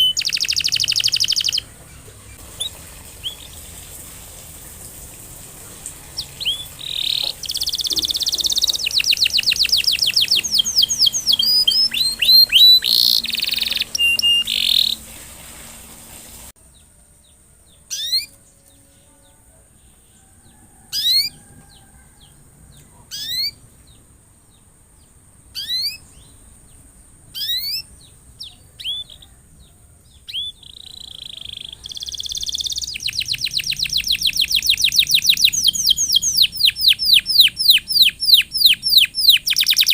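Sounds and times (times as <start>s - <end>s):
canary trilling: 0.0s - 3.8s, 6.1s - 15.1s, 17.8s - 18.4s, 20.3s - 23.7s, 25.5s - 26.3s, 27.3s - 39.9s
canary rising chirps: 0.0s - 4.6s, 5.9s - 15.7s, 17.7s - 18.5s, 19.8s - 24.6s, 25.4s - 39.9s.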